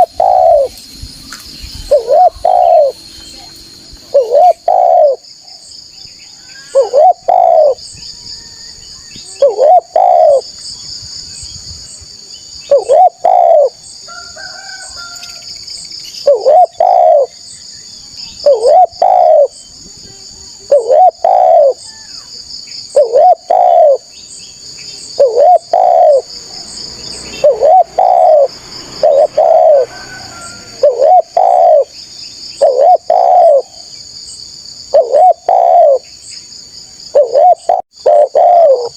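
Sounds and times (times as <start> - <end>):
dove cooing: 0.0 - 0.8, 1.8 - 3.0, 4.1 - 5.2, 6.6 - 7.8, 9.3 - 10.4, 12.7 - 13.8, 16.2 - 17.3, 18.4 - 19.6, 20.6 - 21.8, 22.9 - 24.1, 25.0 - 32.0, 32.6 - 33.9, 34.9 - 36.1, 37.1 - 38.9.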